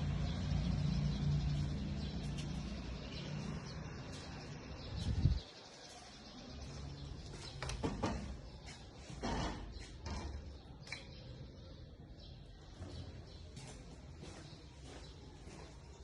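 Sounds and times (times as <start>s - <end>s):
engine humming: 0.0s - 5.4s
faint birds chirping: 0.0s - 16.0s.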